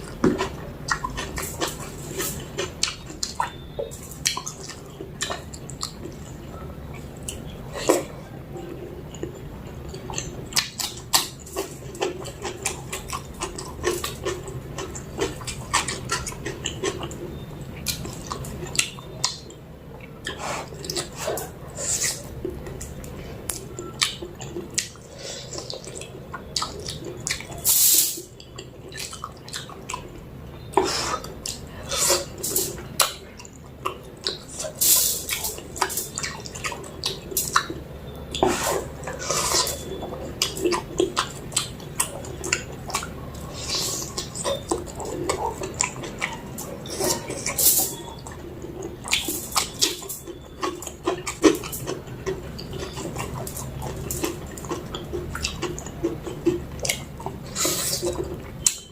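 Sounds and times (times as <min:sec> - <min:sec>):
wet chewing and lip-smacking: 0:00.0 - 0:58.9
hissing slurps: 0:38.4 - 0:39.9, 0:57.4 - 0:58.2.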